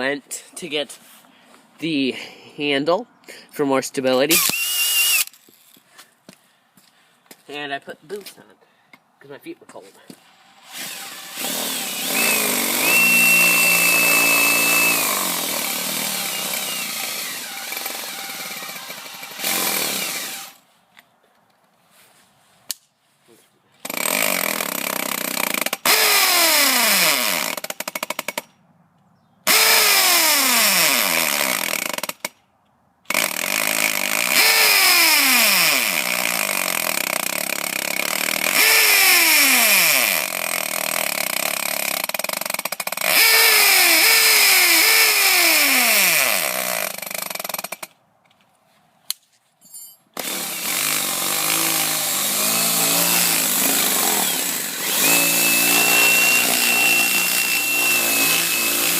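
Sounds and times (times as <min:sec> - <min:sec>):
power drill grinding through metal: 0:04.3 - 0:05.8, 0:10.2 - 0:20.6, 0:23.8 - 0:28.3, 0:29.5 - 0:32.2, 0:33.1 - 0:47.9, 0:50.2 - 0:58.9.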